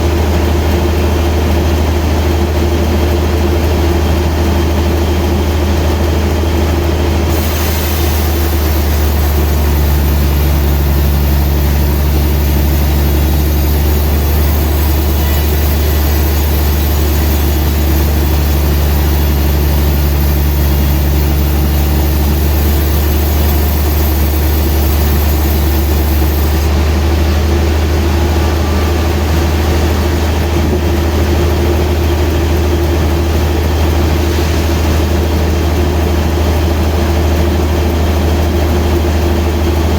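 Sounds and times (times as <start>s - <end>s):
sawmill machinery engine hum: 0.0s - 39.9s
high hiss: 7.3s - 27.0s, 33.3s - 36.4s.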